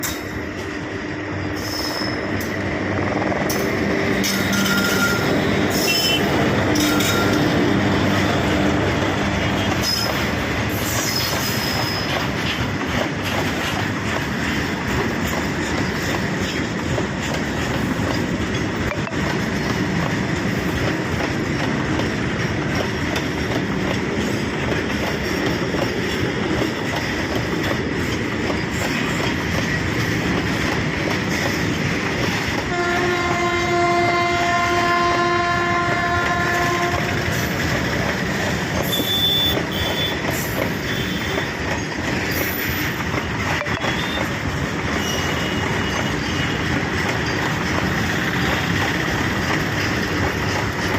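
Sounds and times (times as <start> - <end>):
train wheels rumbling on track: 0.0 - 50.9
high wheel squeals: 1.6 - 2.4, 4.2 - 7.6, 9.7 - 12.2, 38.8 - 47.4
locomotive horn blast: 4.6 - 9.8, 32.7 - 37.2, 38.8 - 40.2.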